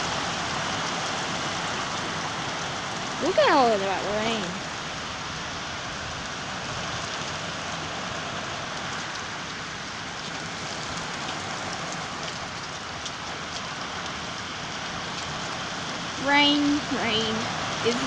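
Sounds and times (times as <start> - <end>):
heavy rain hissing: 0.0 - 18.0
raindrops ticking: 8.7 - 18.0.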